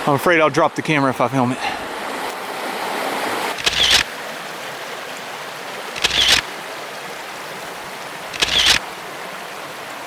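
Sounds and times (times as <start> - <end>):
creek water rushing: 0.0 - 10.0
camera handling noise: 3.6 - 4.1, 6.0 - 6.5, 8.3 - 8.8.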